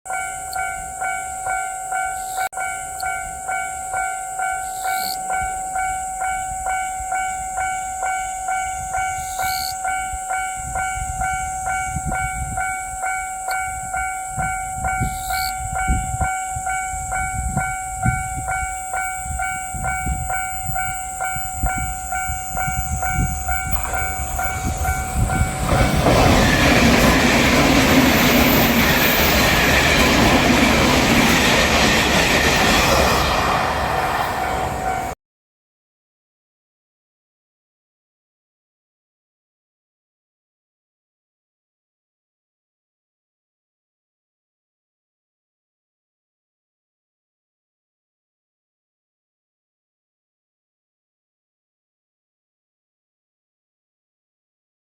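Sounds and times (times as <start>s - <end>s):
level crossing bells ringing: 0.1s - 32.8s, 33.9s - 35.2s
train passing with rail noise: 0.1s - 35.2s.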